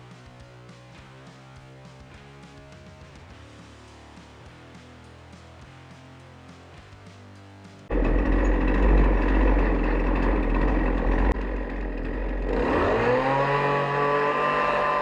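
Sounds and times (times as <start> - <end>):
chainsaw engine revving: 7.9 - 15.0.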